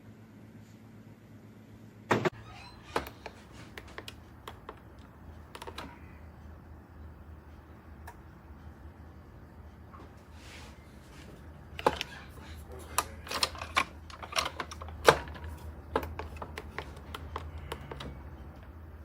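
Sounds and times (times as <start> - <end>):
low steady hum: 0.0 - 19.0
knocks and clicks of handling: 2.1 - 6.0, 11.3 - 18.8.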